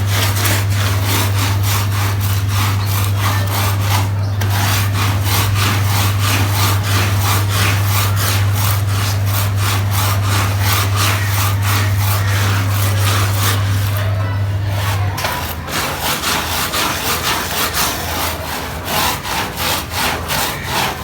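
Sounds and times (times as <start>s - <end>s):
machine hum: 0.0s - 21.0s
scrubbing wet carpet: 0.0s - 21.0s.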